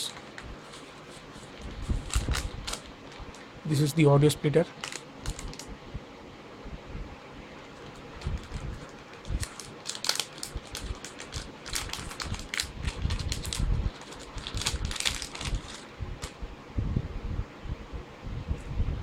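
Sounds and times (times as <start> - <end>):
plastic packaging crinkling: 0.0 - 3.9, 4.6 - 5.7, 7.6 - 16.4.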